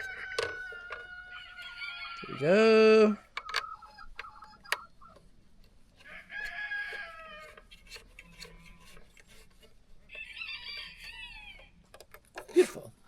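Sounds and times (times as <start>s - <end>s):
roosters crowing: 0.0s - 5.2s, 6.0s - 9.0s, 10.1s - 11.9s.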